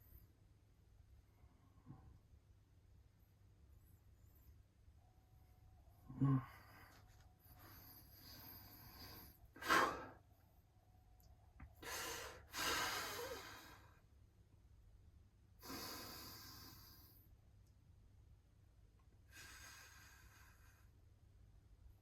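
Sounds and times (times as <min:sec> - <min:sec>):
person breathing deeply: 0:06.1 - 0:10.2, 0:11.8 - 0:14.0, 0:15.6 - 0:17.2.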